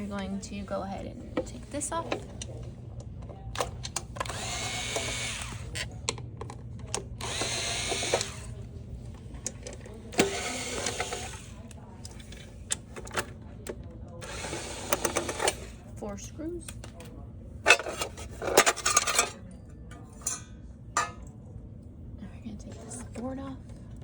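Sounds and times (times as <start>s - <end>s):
cordless drill running: 4.2s - 5.9s, 7.2s - 8.6s, 10.1s - 11.8s, 14.2s - 15.7s.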